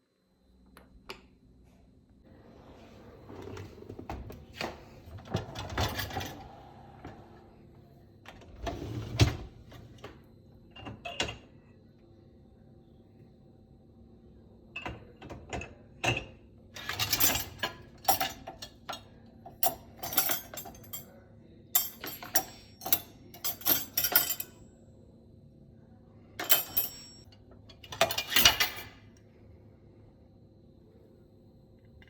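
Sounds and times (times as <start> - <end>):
dishwasher clicks and rattles: 3.3 - 6.5, 14.8 - 19.0, 19.6 - 21.0, 21.8 - 24.5, 26.4 - 29.0.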